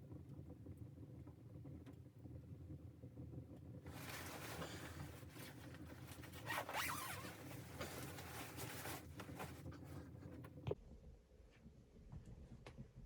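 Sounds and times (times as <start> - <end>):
scratchy rustling of gear: 3.9 - 9.7.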